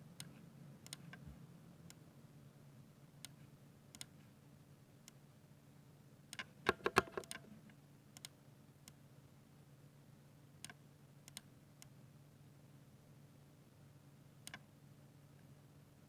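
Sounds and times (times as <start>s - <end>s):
mechanical keyboard keystrokes: 6.4s - 7.4s.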